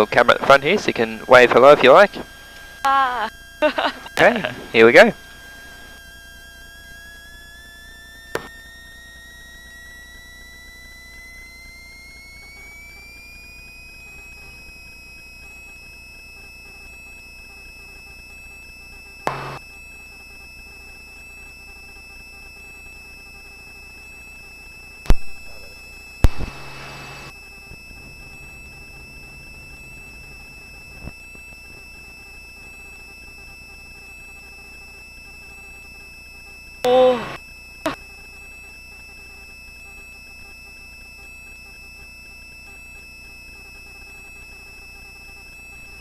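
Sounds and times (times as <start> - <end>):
helicopter turbine whine: 0.0 - 14.5, 20.4 - 42.0
low hum: 19.3 - 19.6, 25.0 - 33.0.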